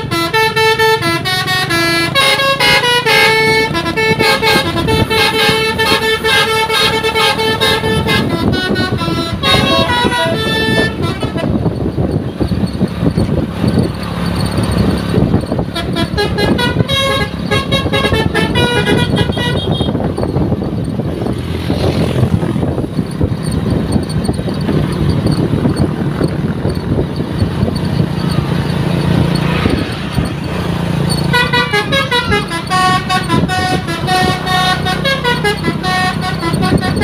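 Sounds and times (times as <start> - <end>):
musical bus horn: 0.0 - 12.5, 15.1 - 21.3, 31.0 - 37.0
bus engine running: 0.0 - 37.0.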